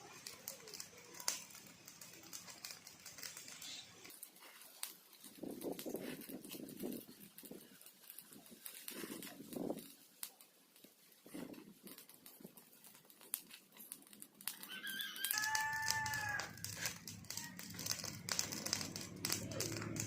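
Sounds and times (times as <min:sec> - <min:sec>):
crackling and rustling: 0:00.0 - 0:20.0
rooster crowing: 0:14.5 - 0:16.7.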